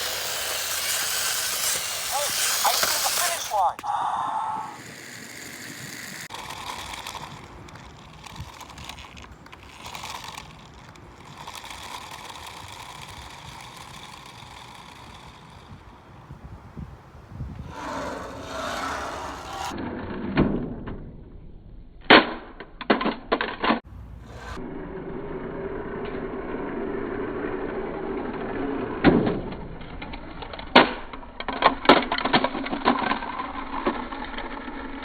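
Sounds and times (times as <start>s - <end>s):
plastic toys clicking and knocking: 0.0s - 4.0s, 4.6s - 15.8s, 29.0s - 35.0s.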